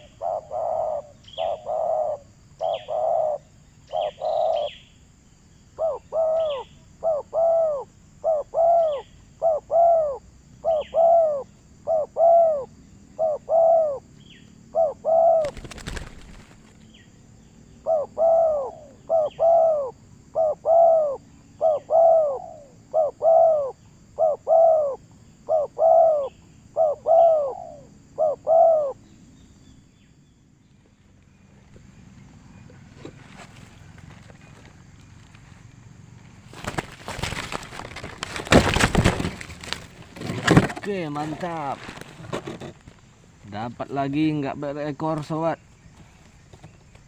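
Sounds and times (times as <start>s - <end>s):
bird calling: 0.0s - 5.0s, 5.7s - 35.5s.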